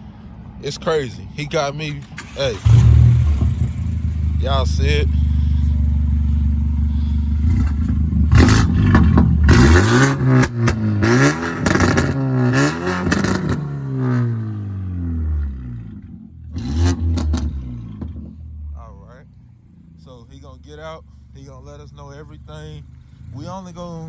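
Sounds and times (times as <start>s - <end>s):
car engine idling and revving: 0.0s - 24.0s.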